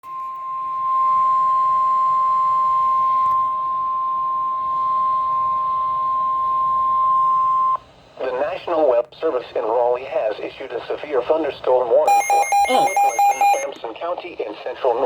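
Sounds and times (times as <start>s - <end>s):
steady alarm tone from radio speaker: 12.1s - 13.7s.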